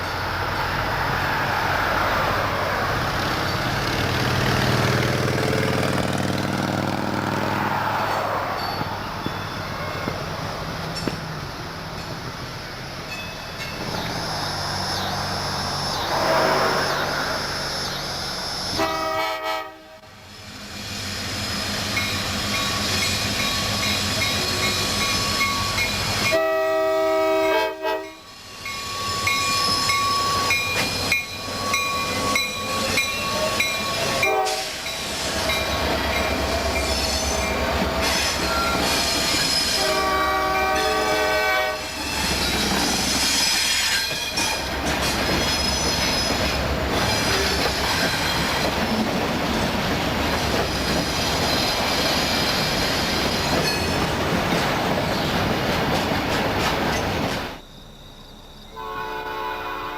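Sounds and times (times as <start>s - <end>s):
freight train passing: 0.0s - 59.9s
locomotive air horn blasts: 18.8s - 20.1s, 26.3s - 28.2s, 33.9s - 34.8s, 39.7s - 41.9s, 58.7s - 59.9s.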